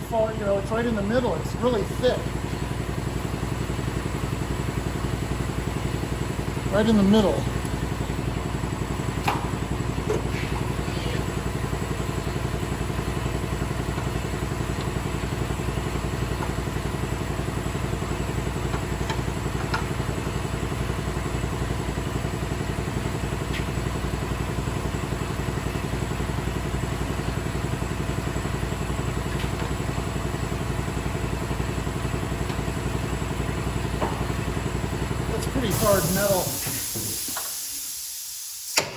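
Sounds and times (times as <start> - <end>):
motor-driven machine running: 0.3 - 38.9.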